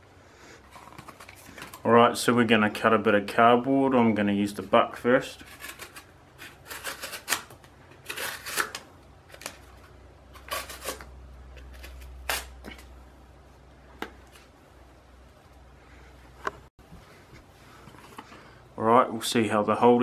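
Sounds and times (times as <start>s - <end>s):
knife scraping through cardboard: 5.4s - 8.8s, 10.4s - 11.1s.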